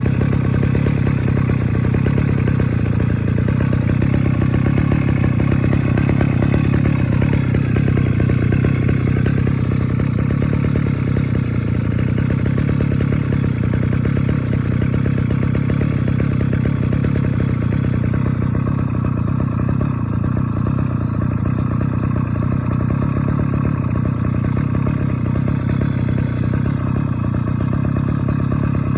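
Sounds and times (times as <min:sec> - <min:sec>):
brush cutter engine running: 0:00.0 - 0:28.9.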